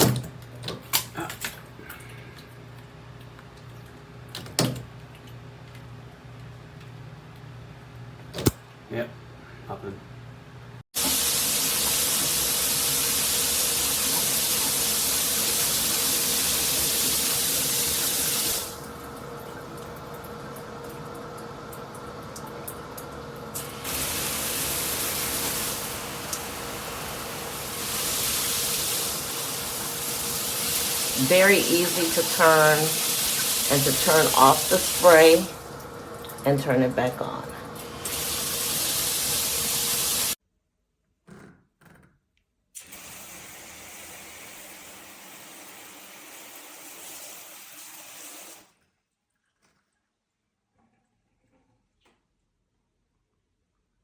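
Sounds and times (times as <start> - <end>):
shower spray hissing: 23.6 - 35.7, 37.9 - 40.4, 42.8 - 48.7.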